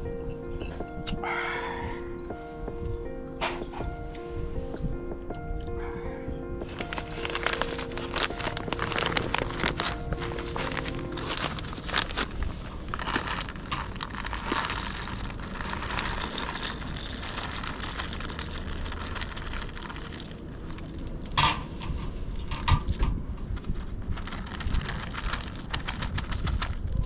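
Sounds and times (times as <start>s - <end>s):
crackling and rustling: 6.6s - 27.0s.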